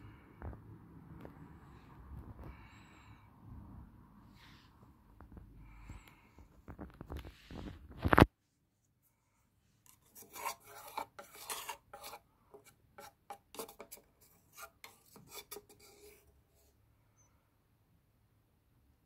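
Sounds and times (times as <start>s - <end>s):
faint scraping and rubbing: 4.2s - 17.3s.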